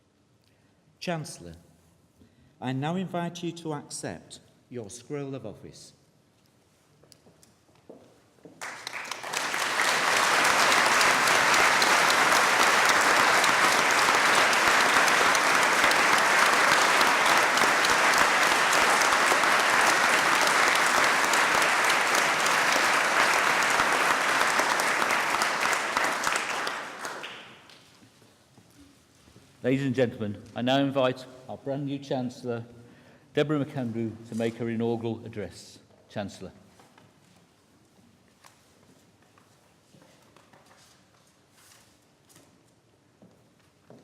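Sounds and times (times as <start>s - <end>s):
audience applauding: 8.6s - 27.8s.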